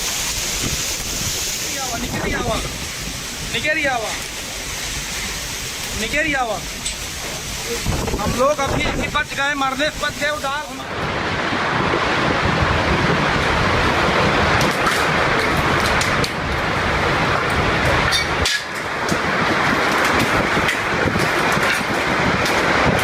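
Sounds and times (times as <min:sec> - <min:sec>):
hailstones pelting down: 0:00.0 - 0:23.0.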